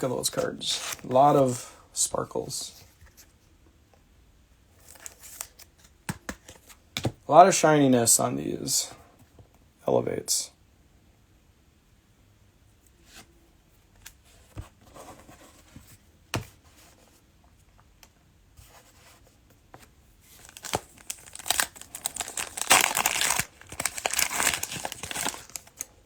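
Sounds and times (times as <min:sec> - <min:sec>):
cellophane wrapper tearing and crinkling: 0:20.4 - 0:25.9.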